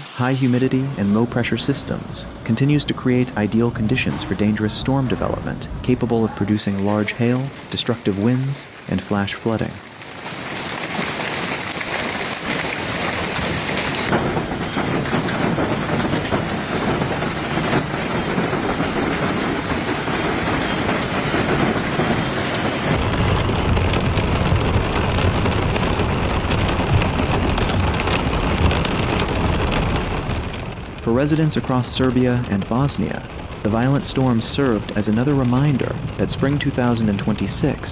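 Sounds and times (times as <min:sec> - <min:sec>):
heavy rain hissing: 0:00.0 - 0:01.0, 0:06.5 - 0:37.9
deep thunder rumble: 0:12.4 - 0:37.9.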